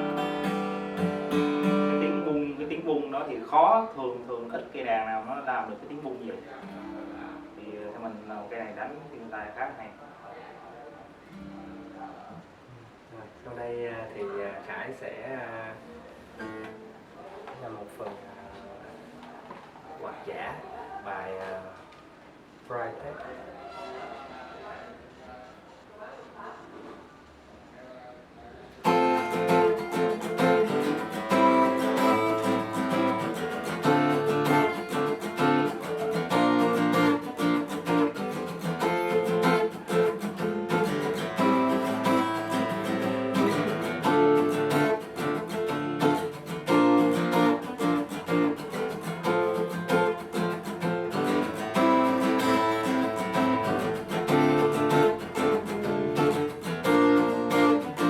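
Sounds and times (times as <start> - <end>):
acoustic guitar solo: 0.0 - 3.1, 6.3 - 7.6, 11.2 - 12.4, 16.4 - 17.0, 28.8 - 58.0.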